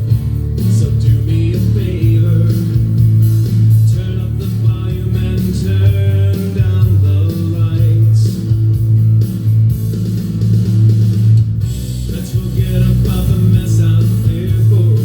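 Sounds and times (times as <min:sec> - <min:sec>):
guitar music: 0:00.0 - 0:15.0
steady bass line: 0:00.0 - 0:15.0.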